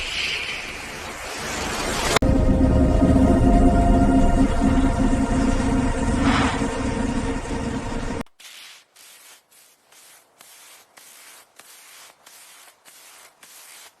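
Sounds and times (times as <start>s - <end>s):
background music: 1.7s - 8.2s
hissy scraping strokes: 5.9s - 14.0s.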